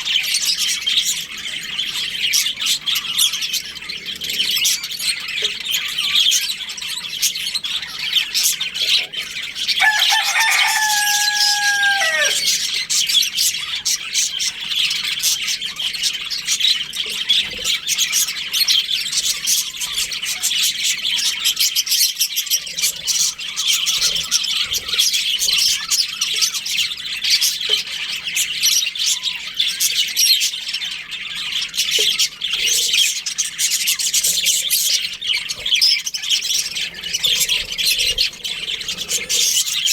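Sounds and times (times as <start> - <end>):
budgerigars chattering: 0.0 - 39.9
rooster crowing: 9.8 - 12.7.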